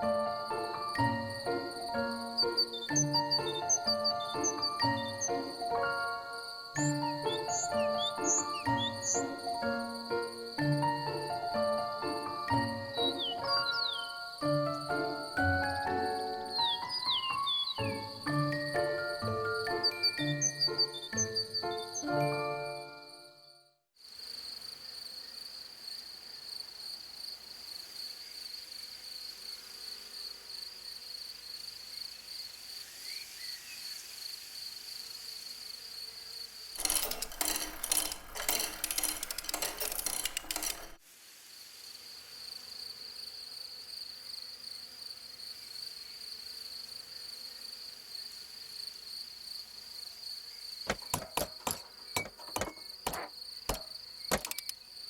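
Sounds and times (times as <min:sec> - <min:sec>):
insects chirring trill: 0:00.0 - 0:55.0
rattling run of rapid clicks: 0:36.8 - 0:41.0, 0:50.9 - 0:54.7
sharp irregular clicks: 0:36.8 - 0:41.0, 0:50.9 - 0:54.8.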